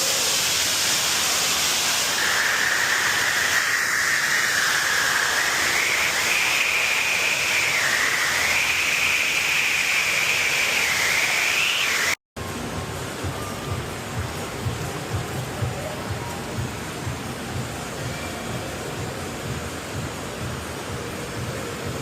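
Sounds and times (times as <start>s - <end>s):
rushing water hiss: 0.0s - 22.0s
high wavering whistle tone: 2.1s - 12.2s.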